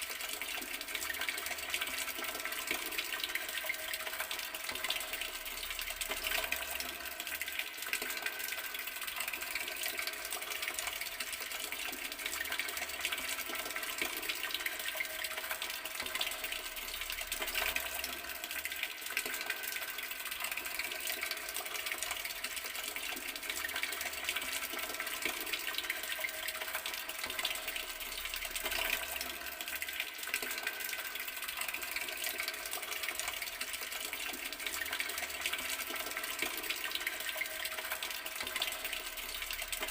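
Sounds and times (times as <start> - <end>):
water tap running: 0.0 - 39.9.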